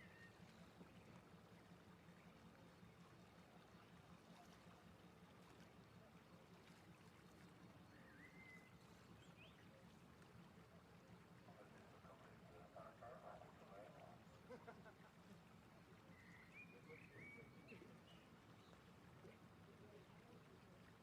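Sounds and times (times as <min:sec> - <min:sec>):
steady low hum: 0:00.1 - 0:16.3.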